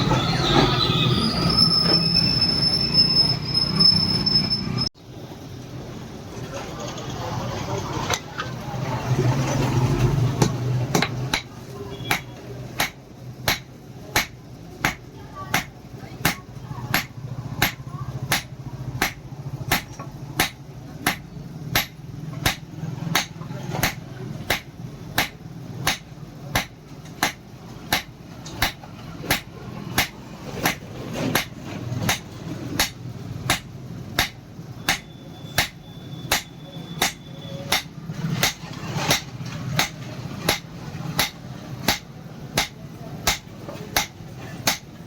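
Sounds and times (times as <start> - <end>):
hammer striking iron on anvil: 10.4 - 44.9.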